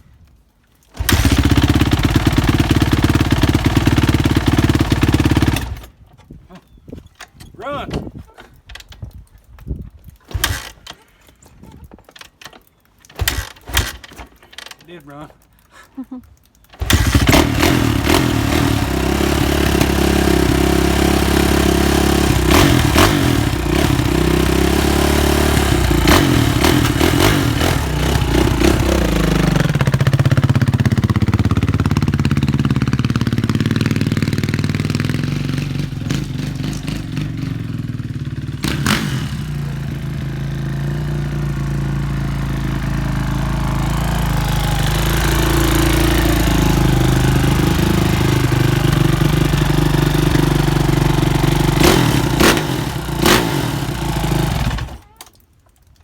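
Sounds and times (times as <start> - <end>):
motocross engine idling: 1.0 - 5.8, 16.8 - 55.0
sharp clicks: 6.6 - 20.6.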